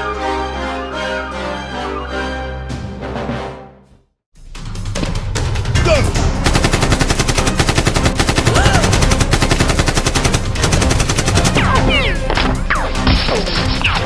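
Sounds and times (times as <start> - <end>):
machine-gun fire: 6.4 - 11.9.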